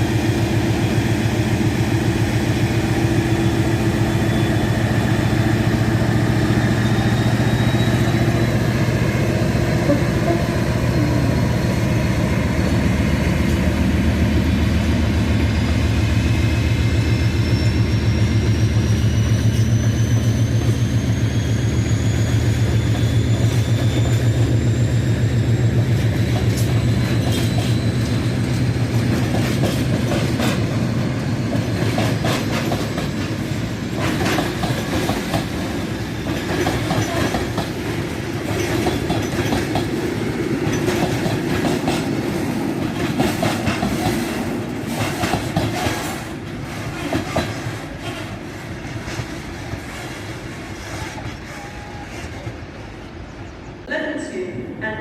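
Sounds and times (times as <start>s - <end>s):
train whine rising in pitch: 0.0s - 29.0s
train low drone: 0.0s - 55.0s.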